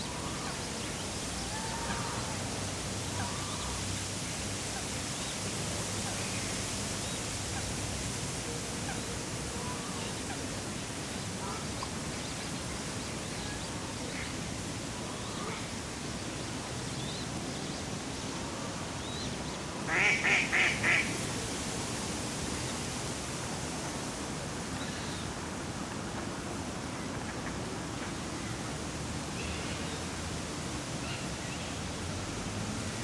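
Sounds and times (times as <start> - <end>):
duck quacking: 19.9 - 21.1.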